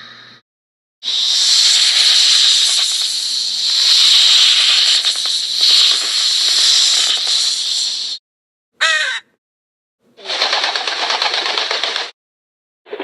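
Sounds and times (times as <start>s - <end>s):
long steady hiss: 1.0s - 8.2s.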